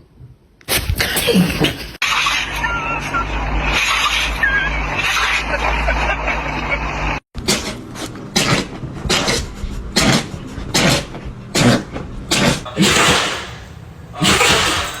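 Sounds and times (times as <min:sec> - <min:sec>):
animal sneezing: 0:07.4 - 0:13.4, 0:14.2 - 0:15.0.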